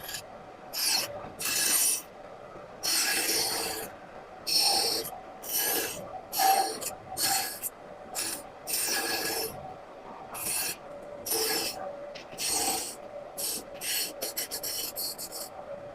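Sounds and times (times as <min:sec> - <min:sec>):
hand tool scraping wood: 0:04.5 - 0:09.5, 0:10.4 - 0:15.5.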